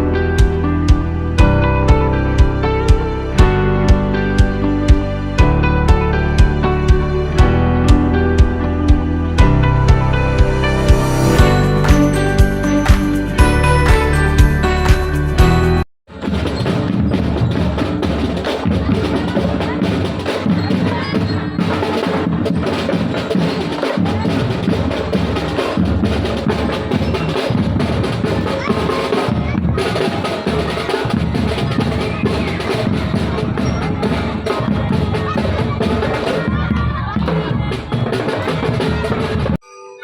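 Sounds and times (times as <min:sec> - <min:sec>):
bass drums: 0:00.0 - 0:21.3
snare drums: 0:07.9 - 0:15.5, 0:16.1 - 0:39.6.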